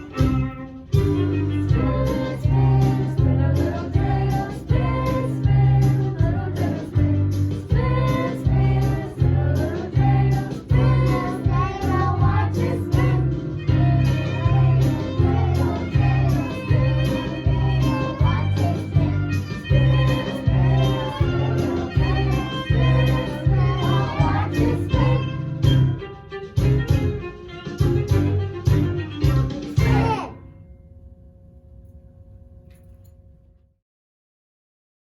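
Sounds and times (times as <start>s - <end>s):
backing track with pulsing bass: 0.0s - 30.2s
children singing: 1.3s - 25.5s.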